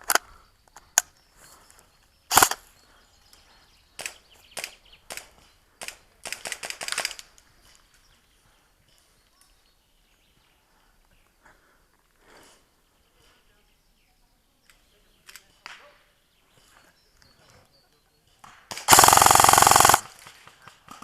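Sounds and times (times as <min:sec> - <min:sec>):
quiet outdoor background: 0:00.0 - 0:21.0
airsoft rifle shots: 0:02.3 - 0:02.6, 0:18.7 - 0:21.0.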